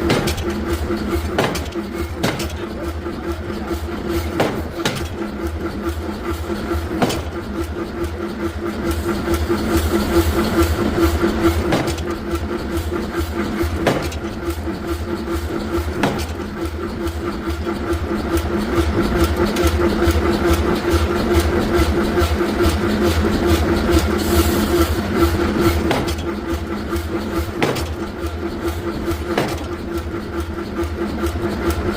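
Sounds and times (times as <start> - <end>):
heavy machinery humming: 0.0 - 31.9
sharp knocks: 1.3 - 2.6, 4.3 - 5.2, 16.0 - 16.4, 27.6 - 28.0, 29.3 - 29.8.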